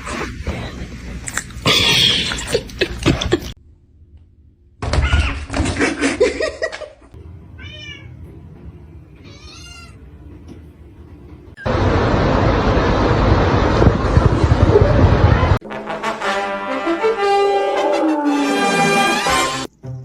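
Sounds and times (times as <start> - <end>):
cat meowing: 7.6 - 8.2, 9.2 - 10.0.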